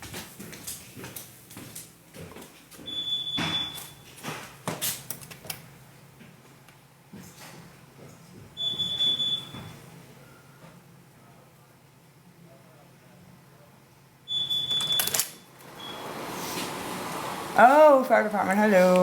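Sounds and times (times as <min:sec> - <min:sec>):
fire alarm tone: 0:02.9 - 0:04.2, 0:08.6 - 0:09.8, 0:14.3 - 0:15.2, 0:15.8 - 0:16.1.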